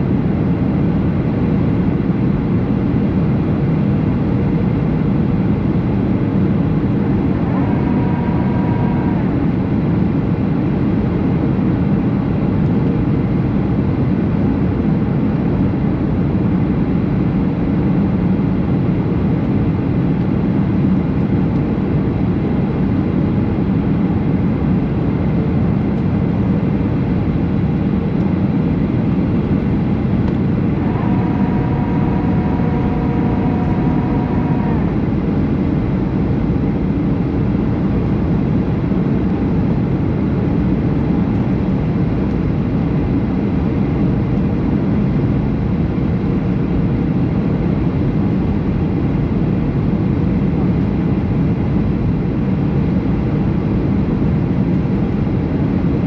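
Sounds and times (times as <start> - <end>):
airliner cabin engine noise: 0.0 - 56.0
two-pitch tone: 7.0 - 10.0, 30.4 - 35.6.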